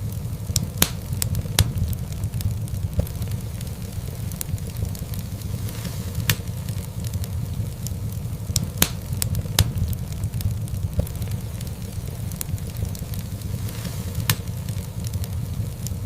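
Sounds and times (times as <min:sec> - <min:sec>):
fire crackling and popping: 0:00.0 - 0:16.0
fire flames rumbling: 0:00.0 - 0:16.0.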